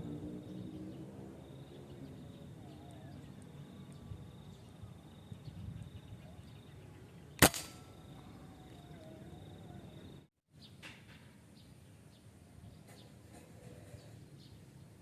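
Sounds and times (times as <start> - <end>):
faint outdoor background: 0.0 - 15.0
air rifle shot: 7.4 - 7.9.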